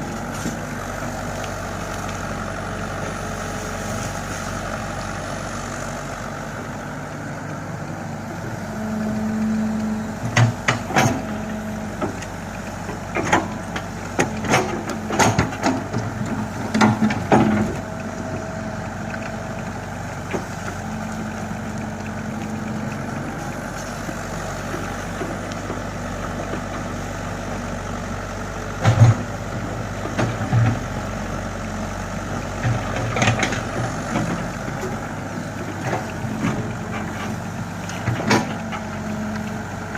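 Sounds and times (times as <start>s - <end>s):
excavator diesel engine running: 0.0s - 39.9s
excavator bucket knocks and clanks: 10.2s - 11.4s, 13.0s - 17.8s, 28.8s - 29.3s, 37.9s - 38.8s.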